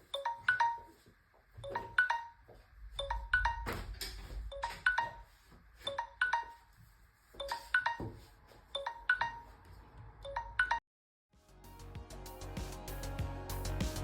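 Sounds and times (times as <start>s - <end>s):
phone ringtone plinking: 0.1s - 1.0s, 1.6s - 2.4s, 5.9s - 6.6s, 7.4s - 8.1s, 10.3s - 10.8s.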